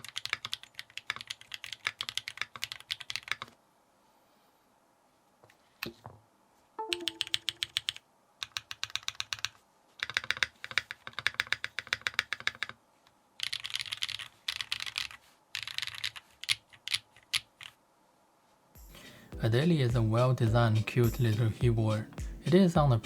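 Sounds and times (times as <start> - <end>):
clacky keyboard keystrokes: 0.0 - 3.5, 13.4 - 17.5.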